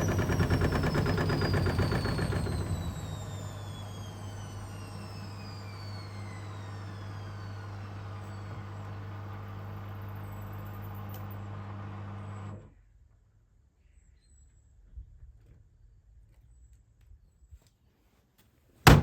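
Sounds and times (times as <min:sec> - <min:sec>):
washing machine drum whine: 0:00.0 - 0:12.6
low motor hum: 0:00.0 - 0:12.7.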